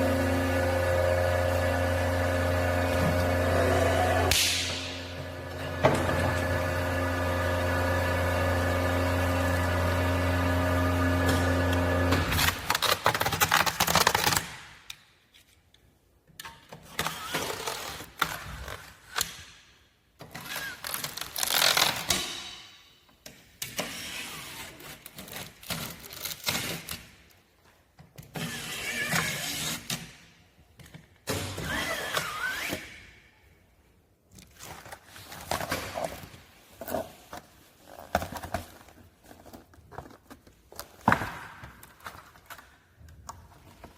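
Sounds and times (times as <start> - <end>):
packaging machine humming: 0.0 - 13.3.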